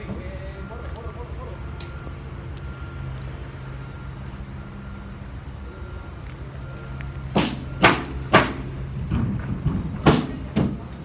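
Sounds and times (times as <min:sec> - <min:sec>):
nails hammered into wood: 0:07.4 - 0:08.8, 0:10.0 - 0:10.9.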